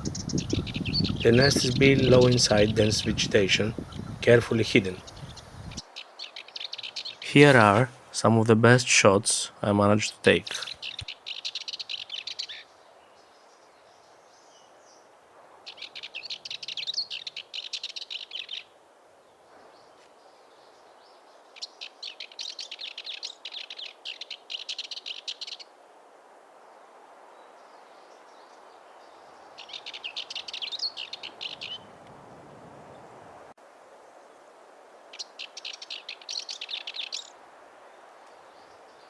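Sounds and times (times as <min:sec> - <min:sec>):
warbler singing scratchy song: 0:00.0 - 0:08.3, 0:10.0 - 0:13.6, 0:15.7 - 0:18.7, 0:20.3 - 0:25.7, 0:27.7 - 0:31.9, 0:35.1 - 0:37.3.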